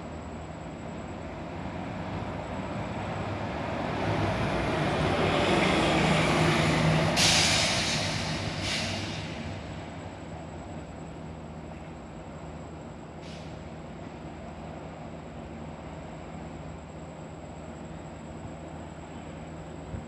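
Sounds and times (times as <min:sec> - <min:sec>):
heavy vehicle passing: 0:03.4 - 0:10.0
sudden hiss: 0:07.2 - 0:09.9.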